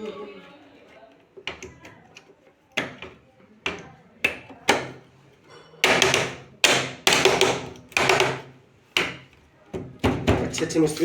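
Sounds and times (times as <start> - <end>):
hammering on washing machine: 5.8 - 10.8.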